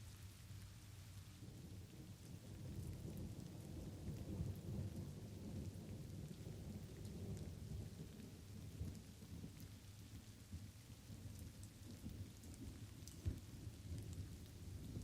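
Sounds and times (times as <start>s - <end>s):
light rain hiss: 0.0s - 15.0s
rolling thunder rumble: 1.4s - 9.6s.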